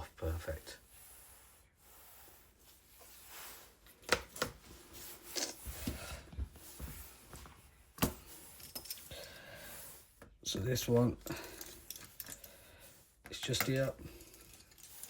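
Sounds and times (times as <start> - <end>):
tools rubbing and scraping: 0.0 - 15.0.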